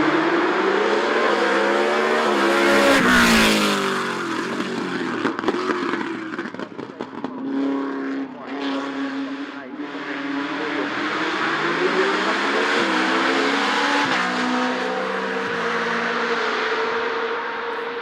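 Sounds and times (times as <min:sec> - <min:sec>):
car engine at high revs passing: 0:00.0 - 0:18.0.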